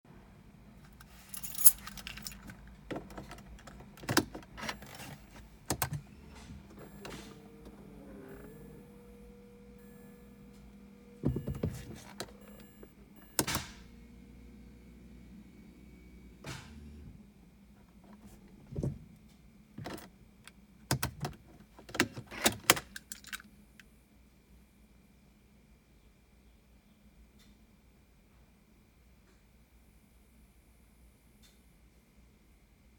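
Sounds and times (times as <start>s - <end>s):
keys jangling: 1.0s - 3.8s
faint electronic tone: 6.0s - 16.4s
sharp clicks and thunks: 11.2s - 13.8s.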